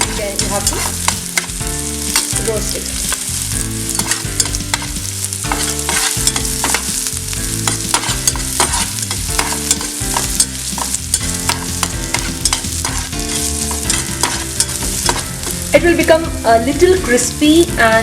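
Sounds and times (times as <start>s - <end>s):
spoon stirring in a pan: 0.0s - 2.3s, 3.8s - 15.7s
food sizzling in a pan: 0.0s - 18.0s.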